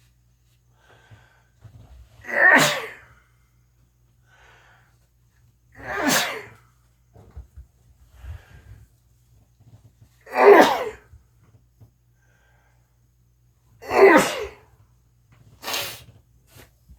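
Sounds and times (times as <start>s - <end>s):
person sneezing: 2.2s - 3.1s, 5.8s - 6.6s, 10.3s - 11.1s, 13.8s - 14.6s, 15.6s - 16.0s.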